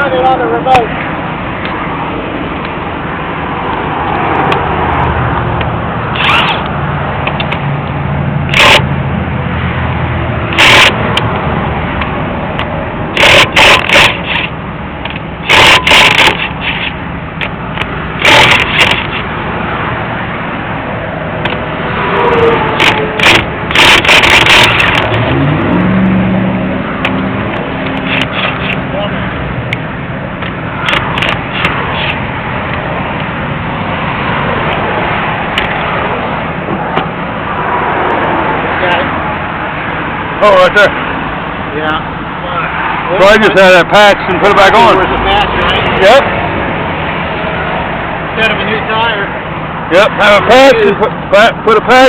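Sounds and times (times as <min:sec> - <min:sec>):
highway traffic: 0:00.0 - 0:52.0
loud mechanical bursts: 0:06.1 - 0:06.7, 0:08.5 - 0:08.9, 0:10.5 - 0:11.3, 0:13.1 - 0:19.3, 0:21.4 - 0:25.5, 0:27.8 - 0:28.8, 0:30.8 - 0:32.3.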